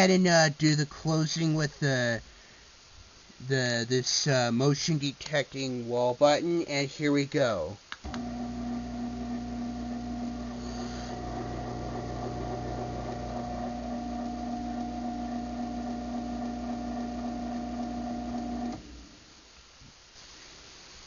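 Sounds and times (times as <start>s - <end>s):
garage door opener motor humming: 8.0s - 19.2s.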